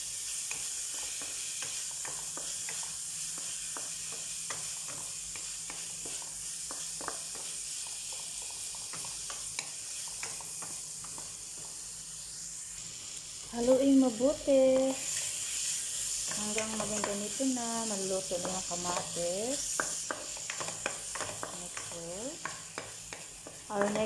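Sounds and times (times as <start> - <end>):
food sizzling in oil: 0.0 - 24.0
light taps stirring pan: 0.5 - 11.8, 16.2 - 24.0.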